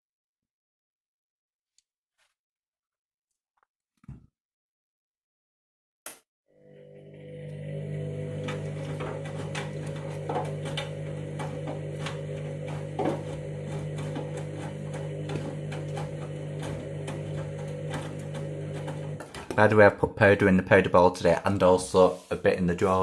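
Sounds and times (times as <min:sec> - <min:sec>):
washing machine motor hum: 0:06.5 - 0:19.8
washing machine clicks and knocks: 0:08.4 - 0:19.6.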